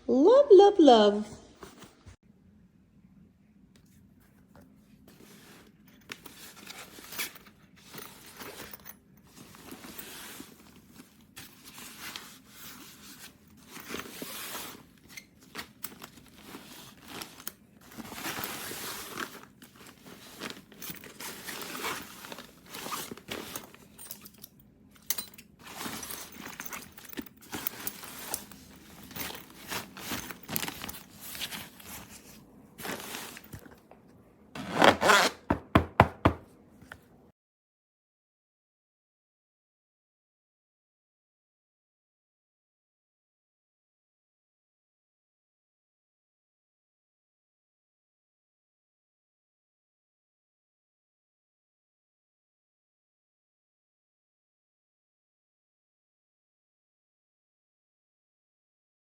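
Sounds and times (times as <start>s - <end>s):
handling noise crinkling and rustling: 3.8s - 37.2s.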